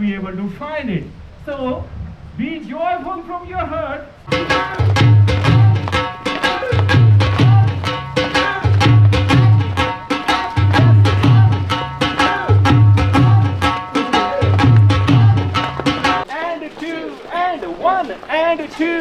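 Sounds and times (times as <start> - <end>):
dance music with fast drum beat: 4.3 - 16.3.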